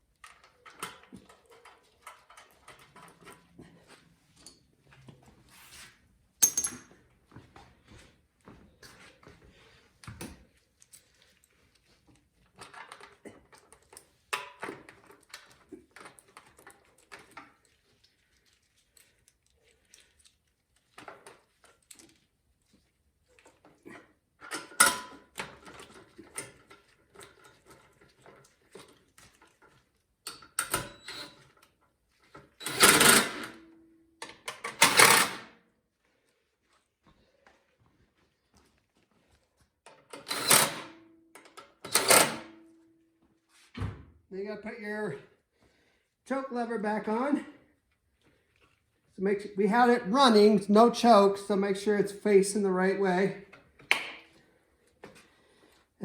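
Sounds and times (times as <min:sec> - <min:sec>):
metal clinks: 0:06.4 - 0:07.0
rapid mechanical clicking of tool: 0:32.6 - 0:33.6.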